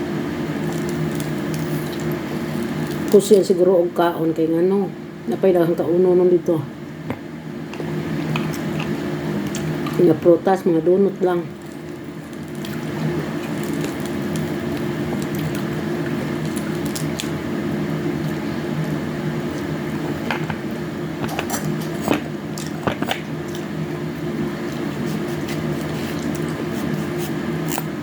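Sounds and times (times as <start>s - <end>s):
steady low hum: 0.0s - 28.0s
wet chewing of fruit: 11.5s - 17.4s, 24.6s - 27.8s.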